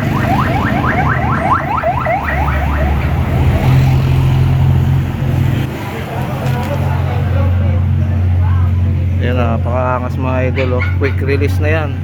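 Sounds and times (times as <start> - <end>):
car alarm siren chirps: 0.0 - 3.4
vehicle engine idling: 0.0 - 12.0.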